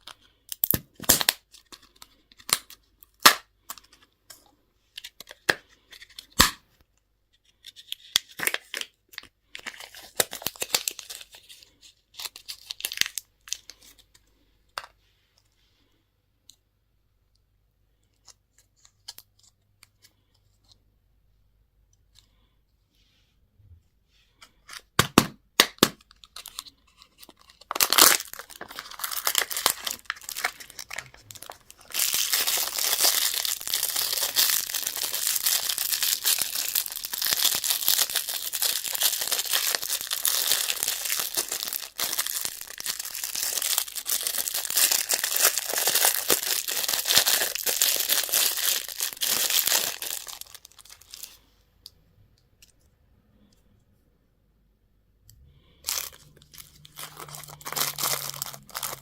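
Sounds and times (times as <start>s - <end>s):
wrapper tearing and crinkling: 0.0s - 3.4s, 7.6s - 14.0s, 26.0s - 51.4s, 55.8s - 59.0s
candy wrapper snapping: 0.5s - 1.6s, 2.4s - 3.5s, 27.3s - 51.3s, 55.9s - 59.0s.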